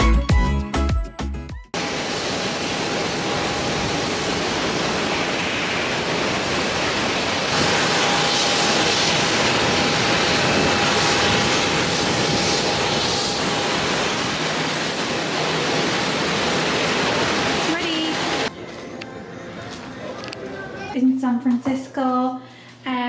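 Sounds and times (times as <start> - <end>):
jet airliner in flight: 1.8 - 18.5.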